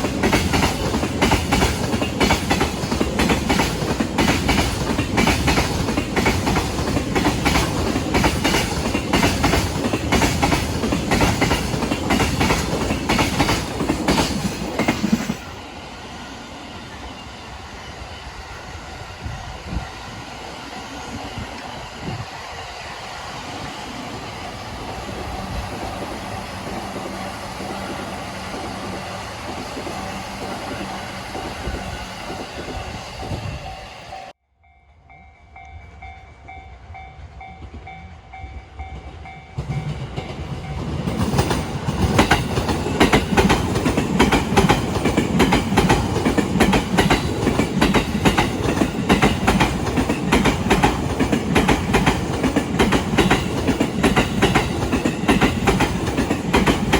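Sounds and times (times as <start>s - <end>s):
train wheels clacking on rail joints: 0.0s - 15.6s, 38.8s - 56.9s
train running by: 0.0s - 56.9s.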